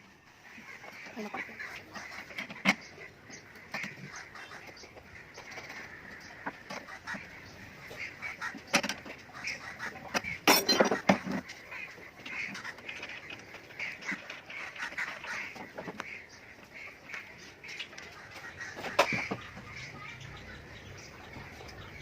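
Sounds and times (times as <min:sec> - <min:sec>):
birds calling: 0:00.0 - 0:22.0
knocks and clatter: 0:10.1 - 0:11.6.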